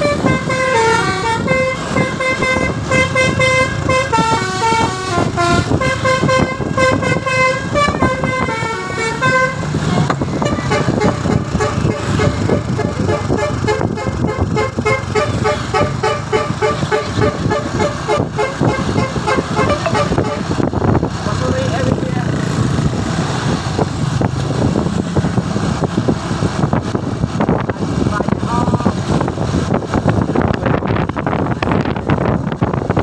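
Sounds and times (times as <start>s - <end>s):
musical bus horn playing a tune: 0.0s - 20.7s
steady low rumble: 1.3s - 33.0s.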